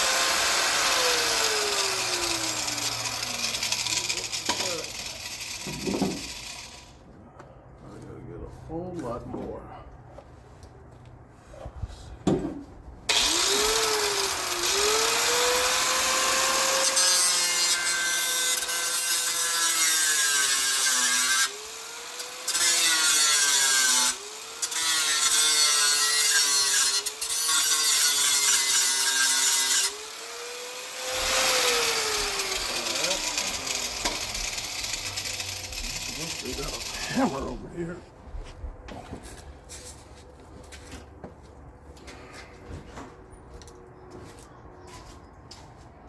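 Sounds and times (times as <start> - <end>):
cut-off wheel cutting metal: 0.0 - 7.0, 13.1 - 37.4.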